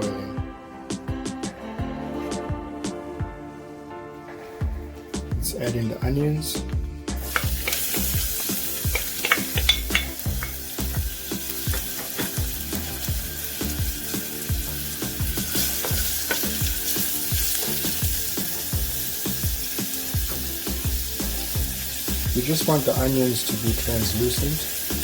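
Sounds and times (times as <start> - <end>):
onion sizzling in oil: 7.1 - 25.0
utensil scraping a pan: 7.2 - 12.6.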